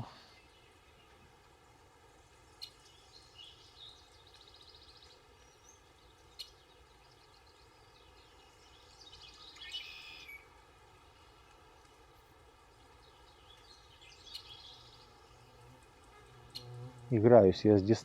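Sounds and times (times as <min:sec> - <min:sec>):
songbird trilling: 0:09.0 - 0:10.5, 0:13.4 - 0:15.6, 0:16.4 - 0:17.2.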